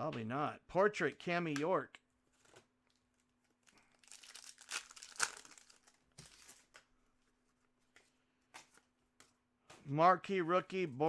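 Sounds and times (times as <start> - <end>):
foil wrapper crinkling and tearing: 2.4 - 6.9.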